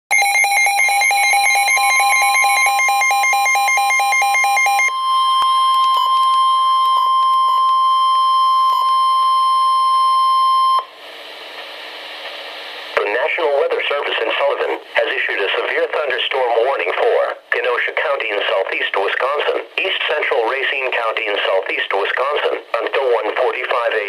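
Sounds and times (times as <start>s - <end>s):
steady warning alarm tone: 0.1s - 10.9s
faint radio hiss: 11.0s - 24.0s.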